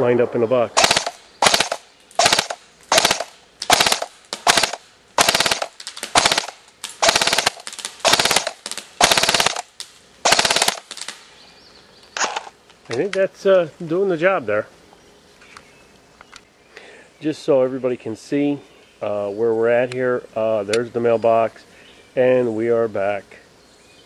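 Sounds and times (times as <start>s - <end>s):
airsoft rifle bursts: 0.8s - 11.2s.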